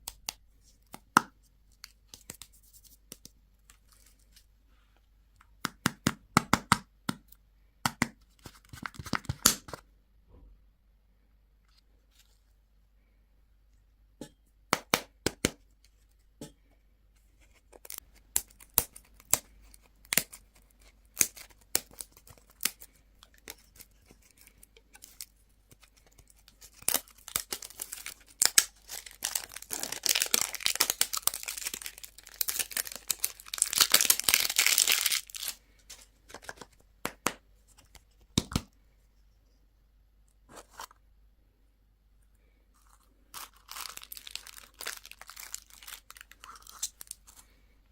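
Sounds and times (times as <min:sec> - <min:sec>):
plastic packaging crinkling and tearing: 0:17.7 - 0:35.6, 0:43.3 - 0:47.5.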